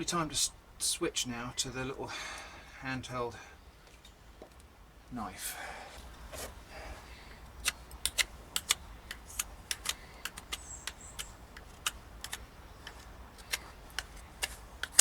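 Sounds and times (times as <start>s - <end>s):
knife carving wood clicks: 7.5s - 15.0s.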